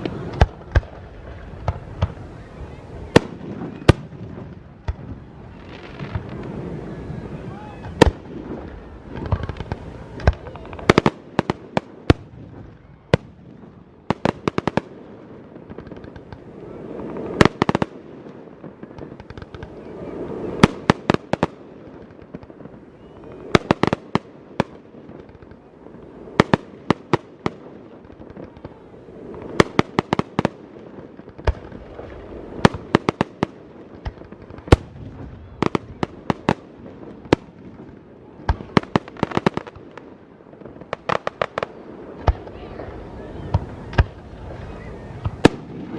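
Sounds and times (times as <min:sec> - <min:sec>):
fireworks bangs: 0:00.0 - 0:45.9.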